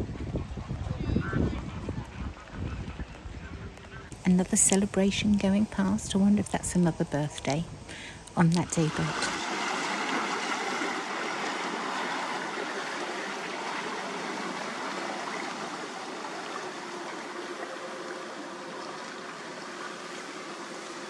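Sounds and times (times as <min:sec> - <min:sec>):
faint low hum: 0:00.0 - 0:09.4
churning water rushing: 0:04.0 - 0:21.0.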